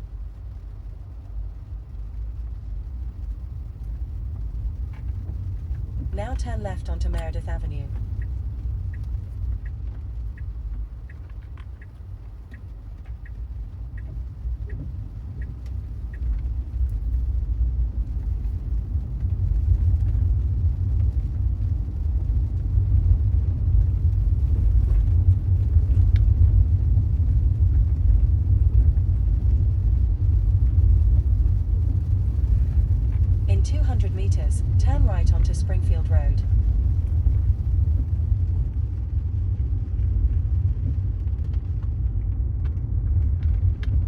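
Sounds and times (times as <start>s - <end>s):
road and tyre rumble: 0.0s - 6.2s, 7.9s - 33.9s, 36.5s - 44.0s
turn signal ticking: 3.7s - 17.3s.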